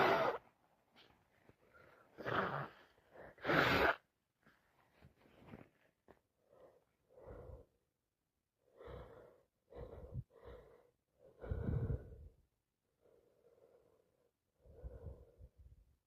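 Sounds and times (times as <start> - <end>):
person gasping breaths: 6.4 - 7.8, 8.7 - 12.4.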